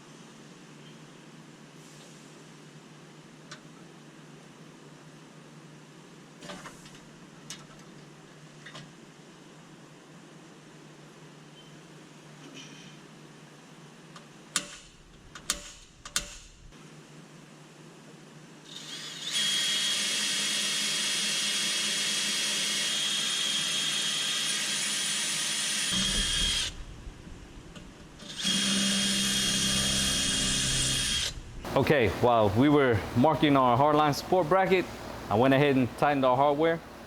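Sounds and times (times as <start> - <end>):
electric drill whining: 18.7 - 26.8, 28.2 - 31.4.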